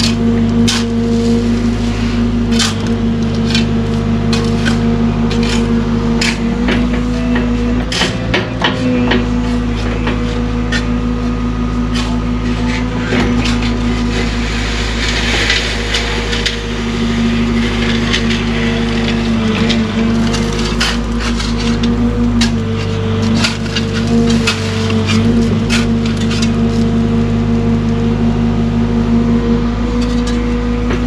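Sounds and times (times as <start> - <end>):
excavator engine running: 0.0 - 31.0.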